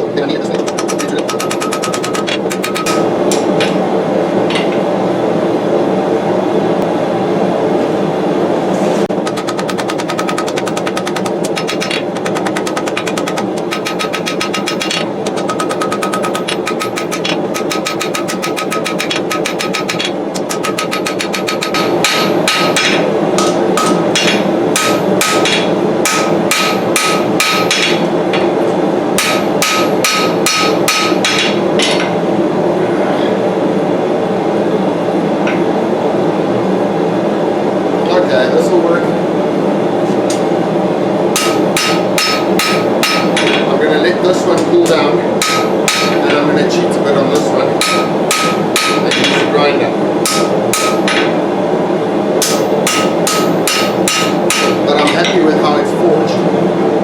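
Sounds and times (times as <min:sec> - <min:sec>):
gas forge burner roar: 0:00.0 - 0:57.0
hammer ringing on steel blade: 0:00.6 - 0:03.2, 0:09.3 - 0:28.0, 0:41.4 - 0:43.4, 0:45.4 - 0:46.2, 0:47.8 - 0:49.2, 0:52.4 - 0:54.8.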